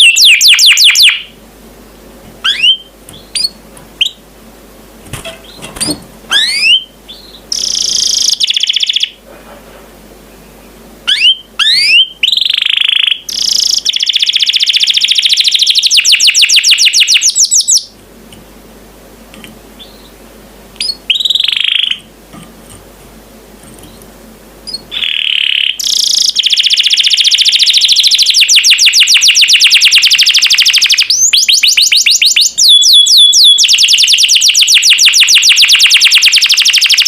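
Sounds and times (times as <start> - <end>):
canary singing trills: 0.0 - 1.4, 2.4 - 4.3, 5.1 - 9.2, 10.3 - 18.0, 19.8 - 22.1, 23.8 - 37.0.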